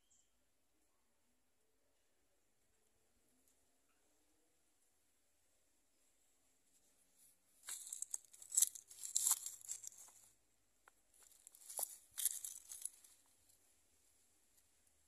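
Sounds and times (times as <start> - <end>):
crinkling rustling handling noise: 7.6 - 10.4, 11.2 - 13.3.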